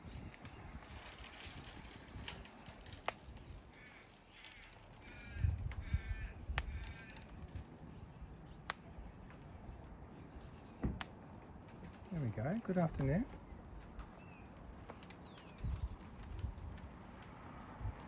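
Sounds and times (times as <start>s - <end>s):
bird calling: 11.8s - 16.0s
sharp clicks: 14.0s - 16.5s.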